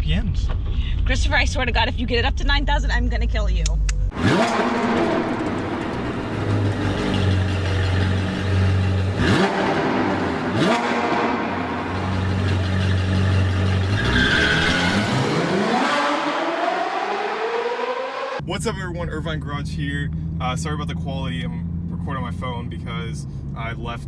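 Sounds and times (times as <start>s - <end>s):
car engine revving hard: 4.1s - 18.6s.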